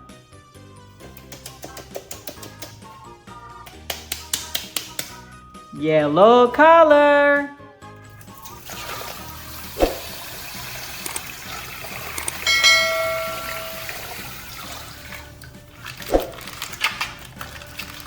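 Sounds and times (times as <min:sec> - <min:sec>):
water pouring and sloshing in plastic: 0:08.4 - 0:12.5, 0:13.8 - 0:18.0
bright bell-like chime: 0:12.4 - 0:14.3.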